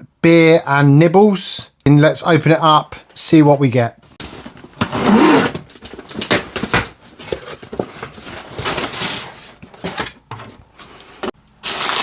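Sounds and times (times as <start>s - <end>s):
packaging rustling: 4.2s - 11.0s, 11.6s - 12.0s.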